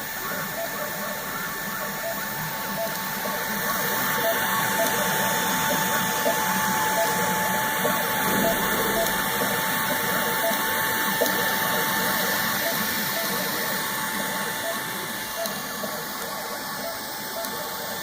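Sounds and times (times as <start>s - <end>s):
cooling fans hissing: 0.0s - 18.0s
stepper motors whining: 0.0s - 18.0s.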